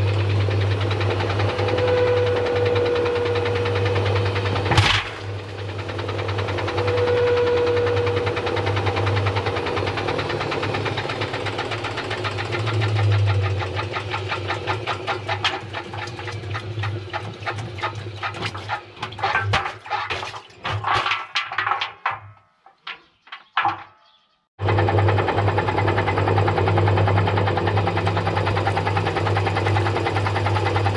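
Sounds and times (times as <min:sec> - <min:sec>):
washing machine motor hum: 0:00.0 - 0:21.2, 0:24.6 - 0:30.9
objects knocking in drum: 0:14.0 - 0:24.1.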